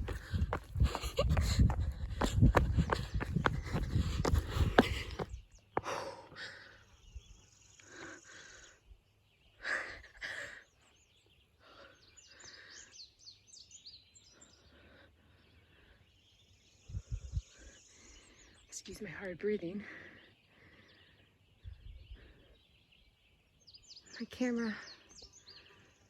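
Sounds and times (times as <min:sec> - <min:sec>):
footsteps scuffing on rock: 0:00.0 - 0:05.9
person breathing heavily: 0:00.0 - 0:06.9
birds chirping: 0:00.0 - 0:26.0.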